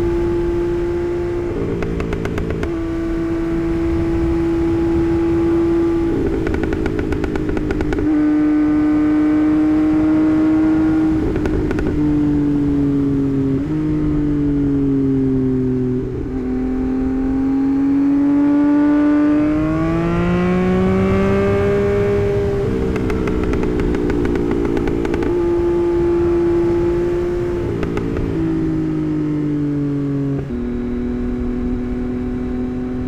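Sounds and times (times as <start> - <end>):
exhaust crackle: 0.0 - 8.2, 10.7 - 14.2, 19.5 - 28.8
motorcycle engine accelerating: 0.0 - 33.0.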